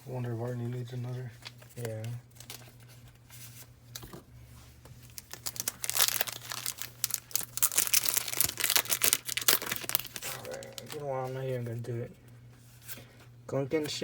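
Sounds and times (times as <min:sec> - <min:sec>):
foil wrapper tearing and crinkling: 0:05.1 - 0:11.1.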